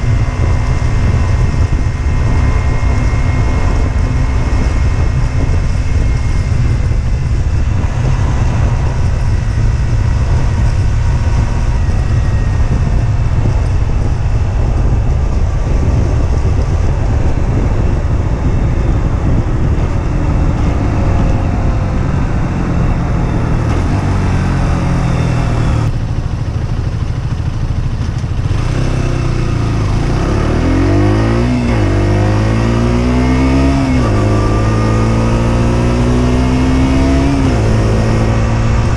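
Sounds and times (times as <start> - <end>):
motorcycle engine: 0.0 - 38.9
wind and road noise on microphone: 0.0 - 38.9.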